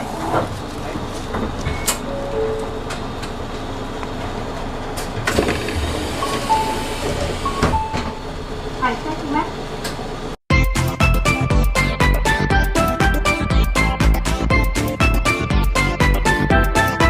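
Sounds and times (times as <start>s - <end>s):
bus running noise: 0.0s - 10.4s
bus door mechanism clicking: 4.9s - 8.4s.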